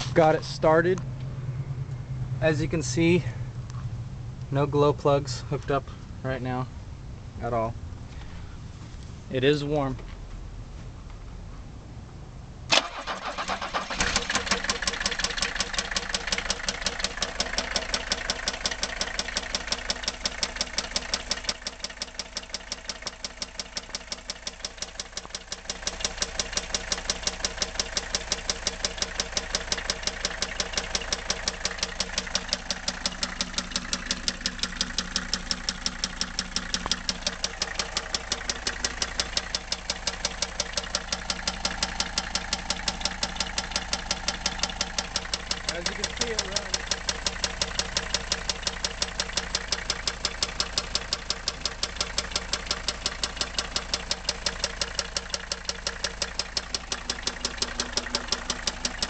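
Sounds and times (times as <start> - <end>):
diesel engine idling with knock: 13.8 - 59.0.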